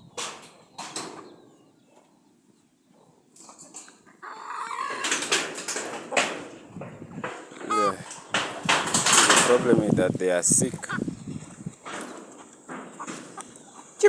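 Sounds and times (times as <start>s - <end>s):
chickens clucking: 0.0s - 14.0s
wings flapping: 7.2s - 10.0s.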